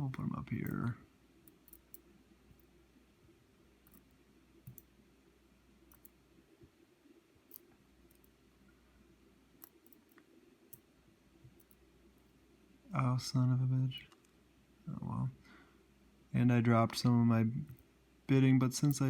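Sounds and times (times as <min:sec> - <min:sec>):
low steady hum: 0:00.0 - 0:19.0
small metal parts clicking: 0:01.6 - 0:02.0.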